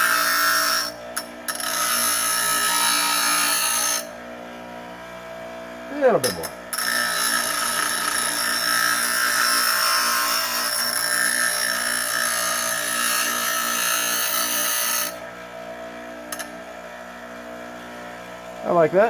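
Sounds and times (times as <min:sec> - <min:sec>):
metal grinding on grinding wheel: 0:00.0 - 0:04.2, 0:05.9 - 0:15.2
grinder motor hum: 0:00.0 - 0:19.0.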